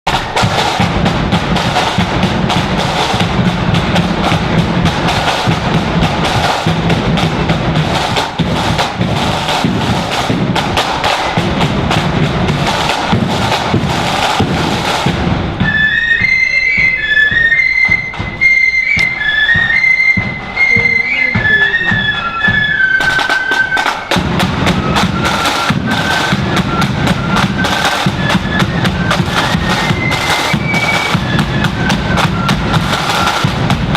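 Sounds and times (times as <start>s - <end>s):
flutes playing: 0.1s - 33.9s
side drums and bass drum: 0.1s - 33.9s.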